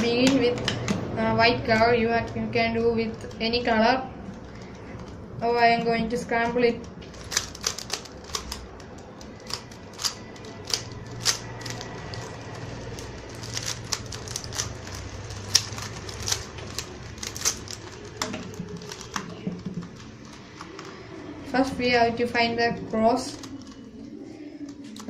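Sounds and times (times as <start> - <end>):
puzzle cube twisting clicks: 6.4 - 21.1.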